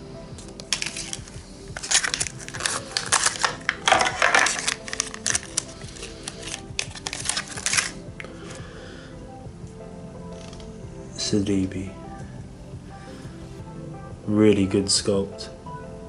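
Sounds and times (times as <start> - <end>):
background music: 0.0 - 16.0
plastic packaging crackling: 0.4 - 8.6.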